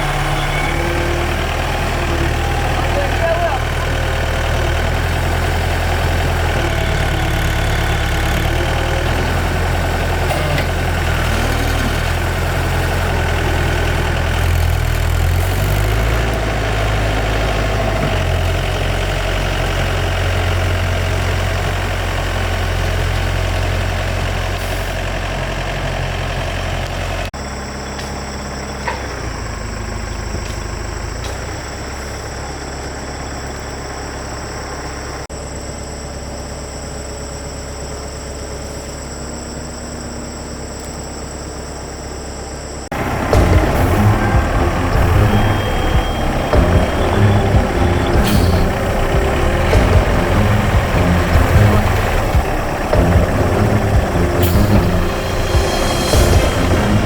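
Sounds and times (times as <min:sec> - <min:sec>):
excavator diesel engine running: 0:00.0 - 0:57.0
high-pitched tones: 0:42.9 - 0:57.0.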